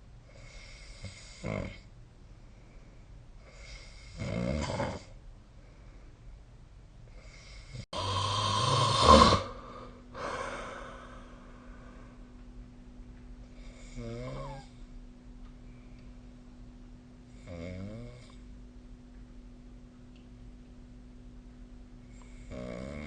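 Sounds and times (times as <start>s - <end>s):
person snoring: 7.3s - 12.0s, 13.6s - 14.8s, 22.2s - 23.0s.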